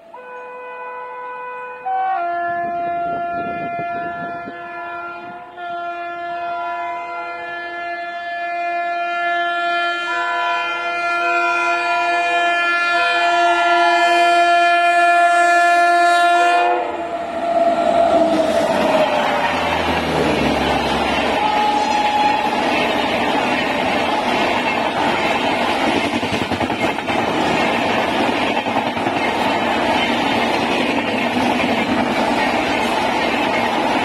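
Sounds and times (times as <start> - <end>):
locomotive air horn blast: 0.1 - 22.8
train rushing past: 14.1 - 34.0.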